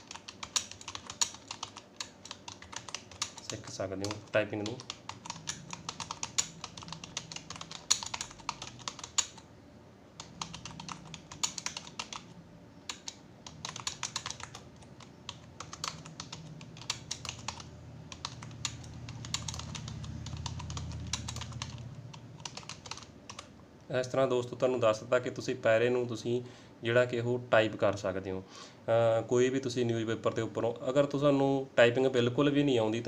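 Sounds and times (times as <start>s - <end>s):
typing on computer keyboard: 0.0s - 9.4s, 10.2s - 12.3s, 12.9s - 23.5s.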